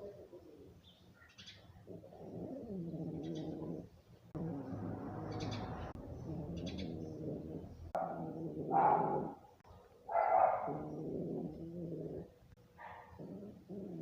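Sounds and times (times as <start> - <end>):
dog snoring: 1.9 - 9.4, 10.6 - 12.3, 13.2 - 14.0.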